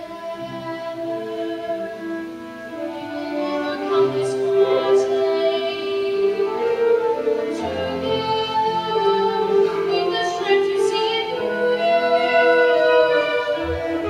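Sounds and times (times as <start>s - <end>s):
musical accompaniment: 0.0s - 14.0s
singers holding long notes: 0.0s - 14.0s.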